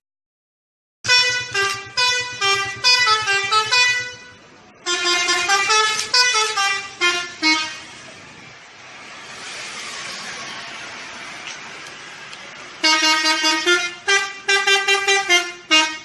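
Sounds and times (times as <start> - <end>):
musical bus horn: 1.0 - 8.0, 12.8 - 16.0
steady rushing noise: 7.0 - 12.9.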